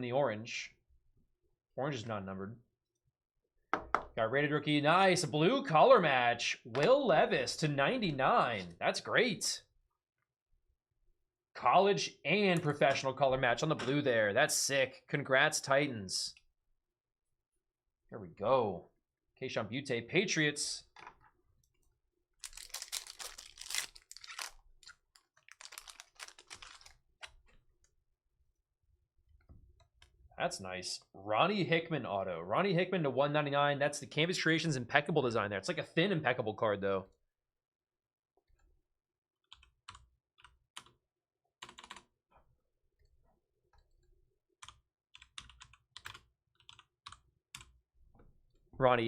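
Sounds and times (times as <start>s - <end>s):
trading cards shuffled: 22.4s - 27.4s.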